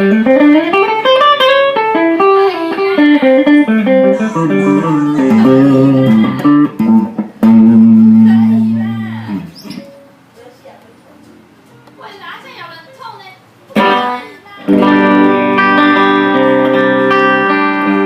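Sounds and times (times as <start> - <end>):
electric guitar melodic run: 0.0 - 9.6, 13.8 - 18.0.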